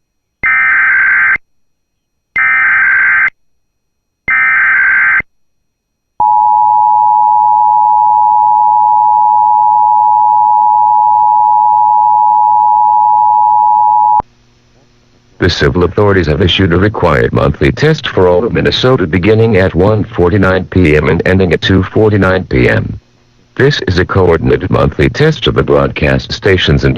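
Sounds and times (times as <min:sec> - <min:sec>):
data tone bursts: 0:06.2 - 0:14.2
two-tone attention signal: 0:06.2 - 0:14.2.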